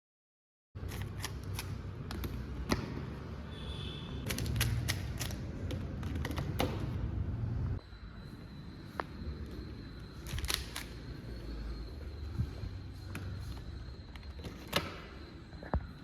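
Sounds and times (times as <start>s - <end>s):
plastic puzzle cubes clicking: 4.2s - 6.8s.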